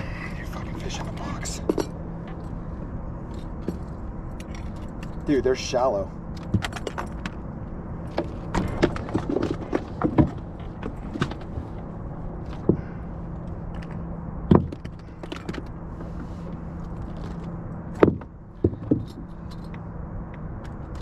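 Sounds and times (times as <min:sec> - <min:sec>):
boat motor humming: 0:00.0 - 0:20.6
knocks of gear in boat: 0:06.4 - 0:07.4, 0:08.1 - 0:11.7, 0:17.0 - 0:19.3.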